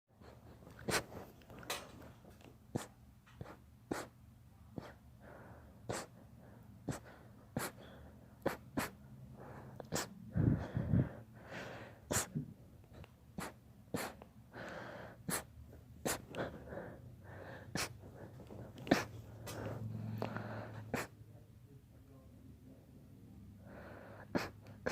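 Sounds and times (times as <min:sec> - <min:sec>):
quiet sneezes: 0:00.2 - 0:01.3, 0:02.7 - 0:04.2, 0:05.9 - 0:06.2, 0:06.8 - 0:07.8, 0:08.4 - 0:09.0, 0:09.9 - 0:10.2, 0:12.1 - 0:12.4, 0:13.4 - 0:14.2, 0:15.3 - 0:16.4, 0:17.8 - 0:18.0, 0:18.7 - 0:19.6, 0:20.8 - 0:21.3, 0:24.2 - 0:24.9
faint breathing: 0:04.8 - 0:08.5, 0:09.2 - 0:12.4, 0:13.4 - 0:21.3, 0:23.5 - 0:24.9.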